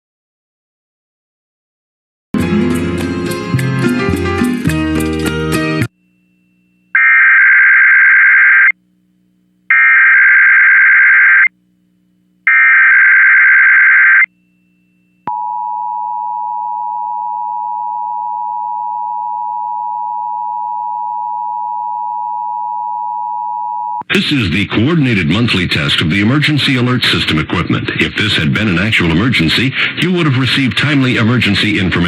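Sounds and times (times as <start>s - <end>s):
warbling digital data tones: 12.5s - 14.3s
radio music: 24.0s - 32.0s.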